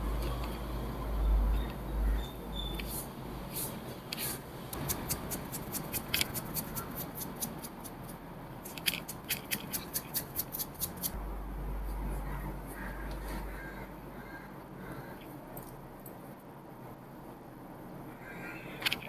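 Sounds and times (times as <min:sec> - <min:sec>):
rapid crisp clicks: 0:04.7 - 0:11.2.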